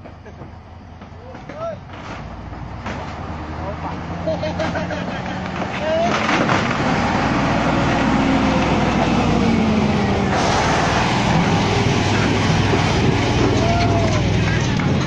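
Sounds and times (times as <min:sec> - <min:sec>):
excavator diesel engine running: 0:03.4 - 0:15.0.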